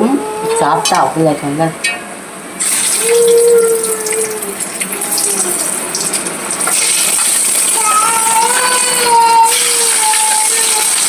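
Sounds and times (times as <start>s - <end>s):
fish deep-frying in oil: 2.6s - 11.0s.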